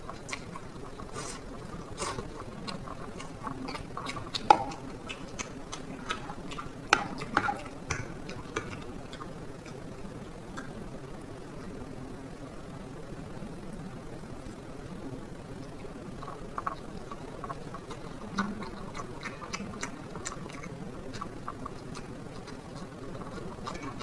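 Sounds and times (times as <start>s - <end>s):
eating mouth sounds: 0.0s - 9.9s, 10.5s - 10.9s, 15.6s - 24.0s.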